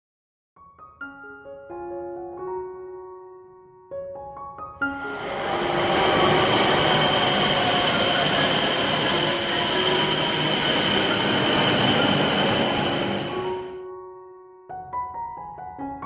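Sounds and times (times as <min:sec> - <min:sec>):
train high-pitched squeal: 0:04.8 - 0:13.8
train rushing rumble: 0:04.8 - 0:13.8.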